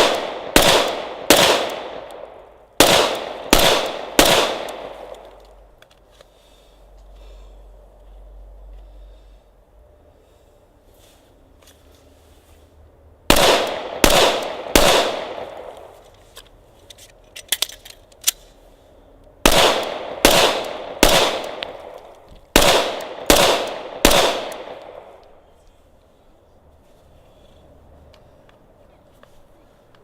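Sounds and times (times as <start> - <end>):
pistol shots ringing: 0.0 - 2.2, 2.8 - 5.2, 13.3 - 15.8, 19.5 - 21.9, 22.6 - 25.1.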